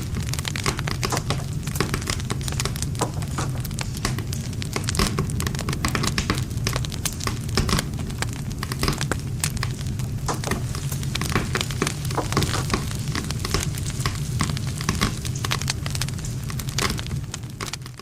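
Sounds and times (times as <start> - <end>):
burning wood popping: 0.0 - 18.0
low rumble of flames: 0.0 - 18.0.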